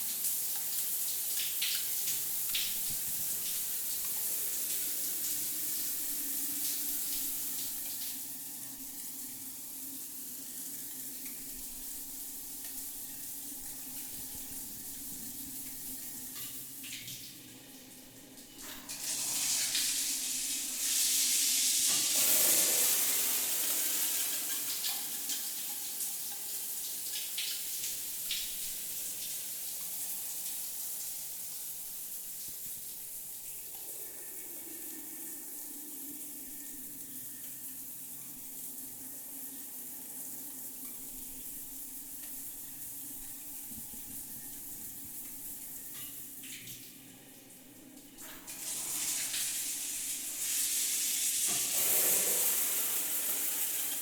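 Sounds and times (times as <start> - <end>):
shower water spraying: 18.9 - 26.1, 48.4 - 54.0.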